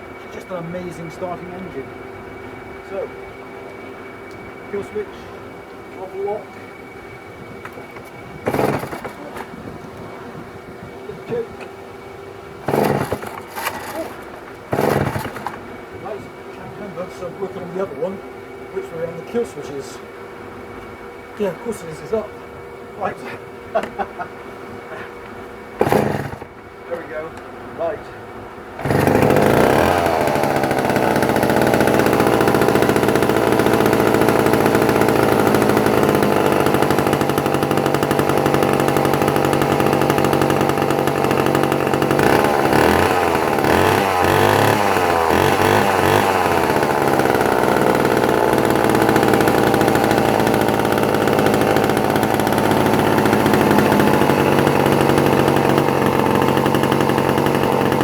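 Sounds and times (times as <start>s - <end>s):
chainsaw engine revving: 7.7s - 9.6s, 12.6s - 20.1s, 23.0s - 27.0s, 28.8s - 58.0s.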